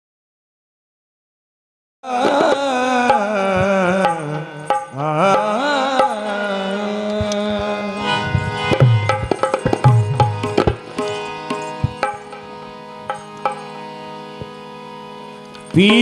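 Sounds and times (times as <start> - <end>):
wavering melodic vocal line: 2.0 - 16.0
tabla strokes: 7.2 - 13.8.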